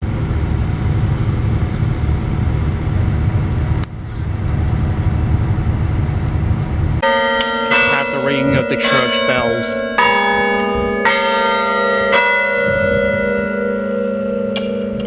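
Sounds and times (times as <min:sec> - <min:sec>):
vehicle road rumble: 0:00.0 - 0:08.8.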